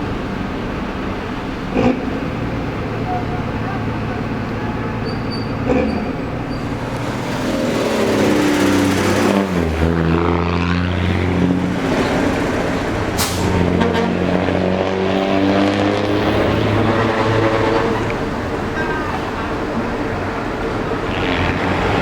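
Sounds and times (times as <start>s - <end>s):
bus diesel engine running: 0.0s - 22.0s
air brakes hiss: 13.2s - 13.6s.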